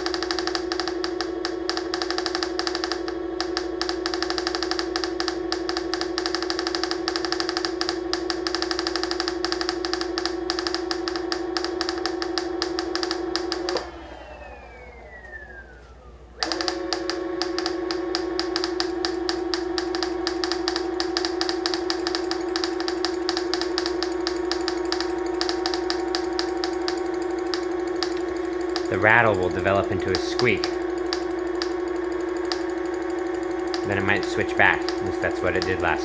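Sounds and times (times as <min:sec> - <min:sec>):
hub motor whine: 0:00.0 - 0:36.0.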